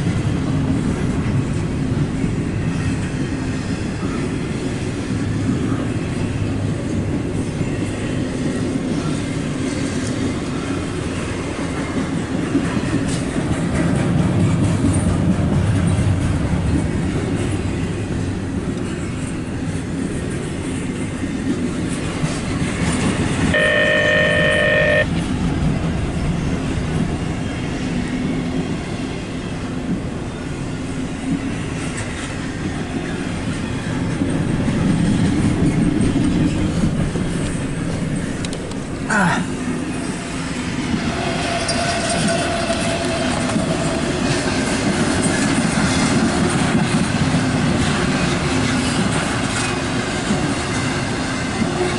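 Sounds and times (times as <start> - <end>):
freight train rumbling on rails: 0.0 - 51.9
train horn blast: 23.5 - 25.2.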